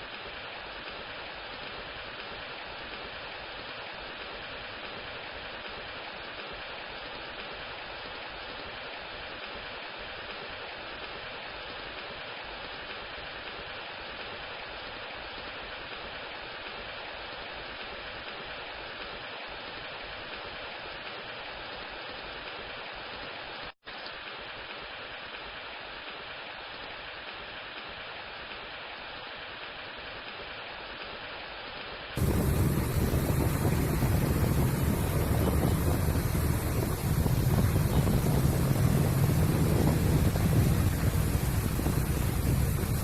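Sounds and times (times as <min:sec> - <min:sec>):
waterfall rushing: 0:32.2 - 0:43.0.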